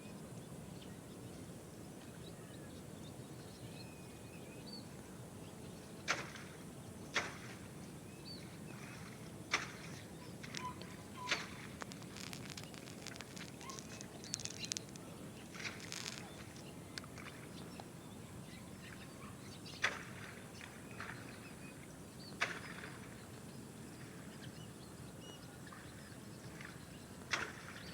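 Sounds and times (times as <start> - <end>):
low outdoor hiss: 0.0 - 27.9
crackles: 9.5 - 17.5
faint bird chirps: 9.8 - 19.8
sharp clicks: 10.4 - 16.4.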